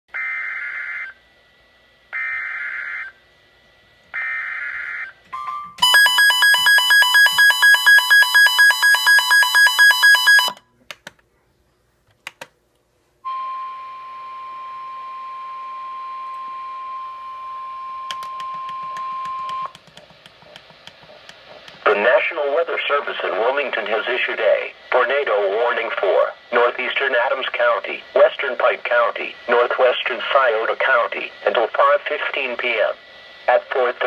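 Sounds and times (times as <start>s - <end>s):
steady warning alarm tone: 0.2s - 1.2s, 2.1s - 3.2s, 4.1s - 10.6s, 13.2s - 19.8s
rapid electronic alarm beeps: 4.2s - 10.6s
radio hiss: 20.3s - 34.0s.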